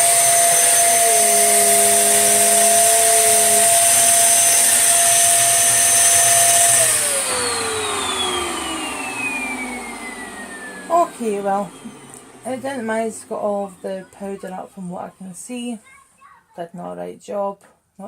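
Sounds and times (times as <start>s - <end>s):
motor winding down: 0.0s - 14.3s
vacuum cleaner whine: 0.0s - 15.2s.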